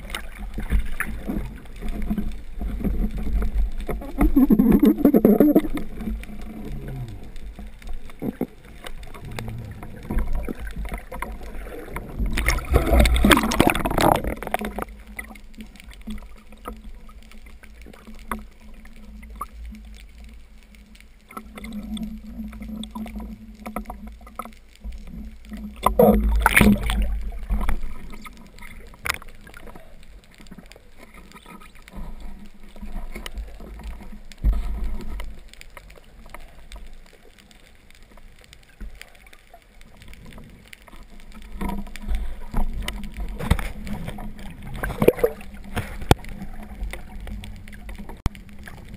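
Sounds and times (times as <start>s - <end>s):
underwater rumble and gurgling: 0.0s - 48.9s
water rushing: 0.0s - 48.9s.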